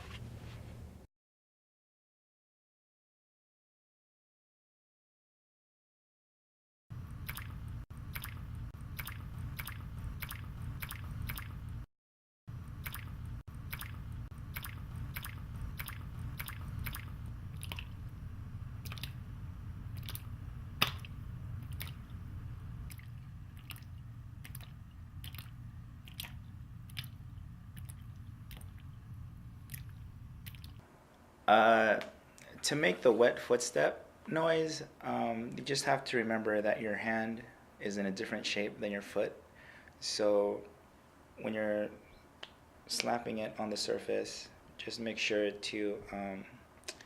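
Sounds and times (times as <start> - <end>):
low rumble: 7.0 - 11.9, 12.5 - 30.8.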